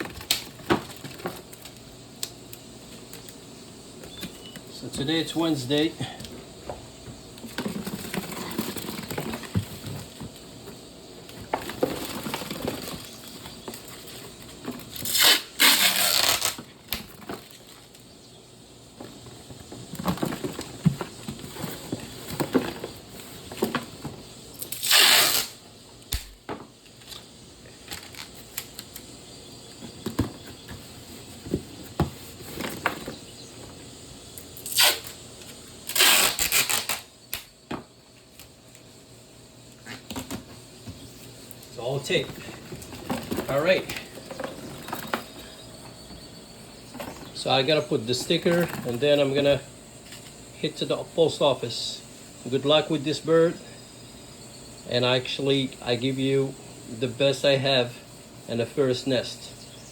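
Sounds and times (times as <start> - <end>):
rustling and handling of box: 7.1 - 18.0, 19.0 - 24.4, 29.8 - 33.8, 39.9 - 49.2
packing tape ripping: 14.8 - 17.6, 24.6 - 26.4, 34.6 - 35.2, 35.8 - 37.5.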